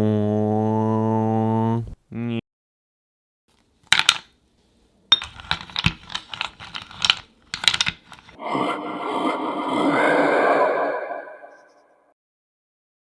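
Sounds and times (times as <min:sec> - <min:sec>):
rough rushing sound effect: 0:08.4 - 0:12.0.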